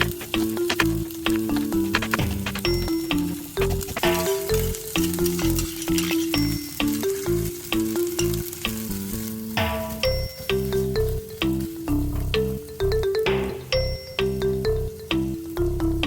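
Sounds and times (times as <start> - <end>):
food sizzling in frying pan: 0.0 - 12.6
background music with bass line: 0.0 - 16.0.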